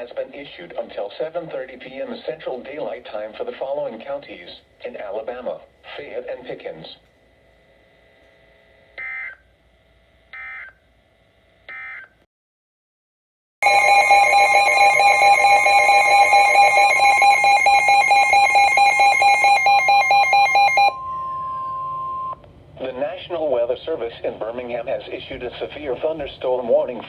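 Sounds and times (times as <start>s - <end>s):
digital data tone bursts: 13.6s - 22.4s
harsh pulsing electronic alert tone: 13.6s - 22.4s.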